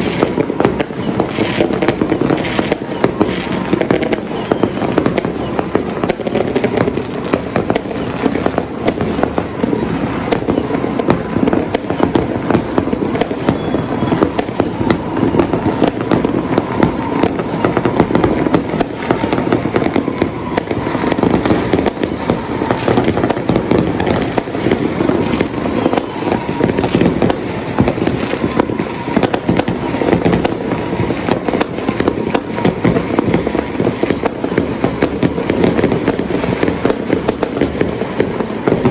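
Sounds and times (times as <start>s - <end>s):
fireworks and firecrackers banging: 0.0s - 38.9s.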